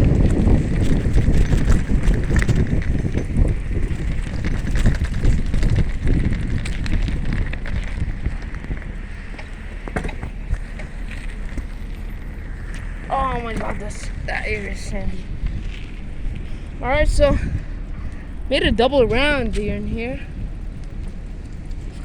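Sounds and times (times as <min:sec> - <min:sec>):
bicycle rattling over rough ground: 0:00.0 - 0:22.0
wind buffeting microphone: 0:00.0 - 0:22.0.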